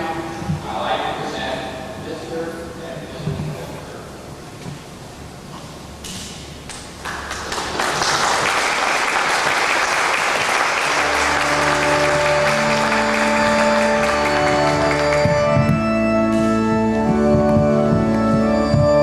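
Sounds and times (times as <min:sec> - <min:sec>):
guests applauding: 0:07.0 - 0:15.6
organ music with held chords: 0:10.6 - 0:19.0.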